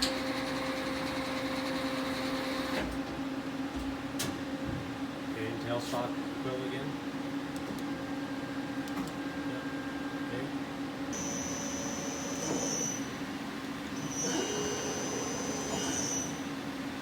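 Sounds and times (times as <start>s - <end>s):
lathe machining hum: 8.1s - 17.0s.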